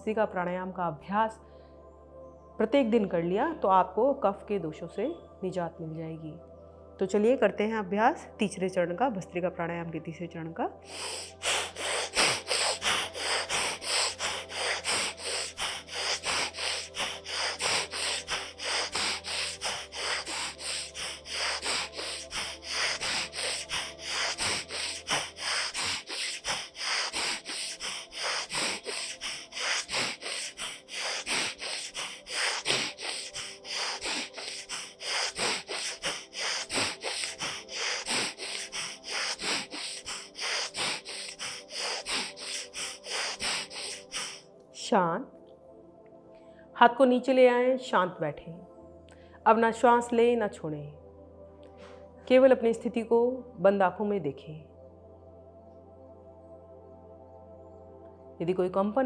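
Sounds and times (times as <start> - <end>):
woman breathing rapidly through nose: 10.8 - 44.5, 49.1 - 49.4, 51.7 - 52.2.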